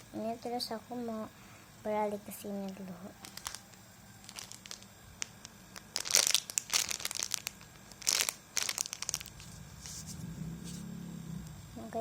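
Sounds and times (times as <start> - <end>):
plastic crinkling and rustling: 2.6 - 10.8
motorcycle engine hum: 9.4 - 11.8.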